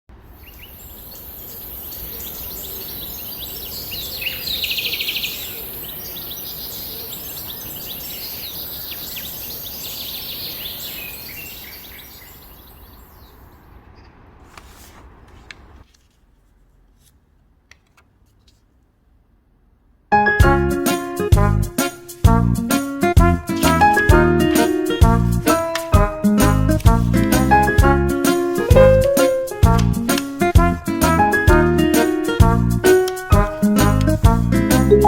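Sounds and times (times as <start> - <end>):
songbirds chirping: 0.1 - 14.2
outdoor background hiss: 0.1 - 20.2, 20.8 - 35.0
bird rapid trill: 0.4 - 13.6.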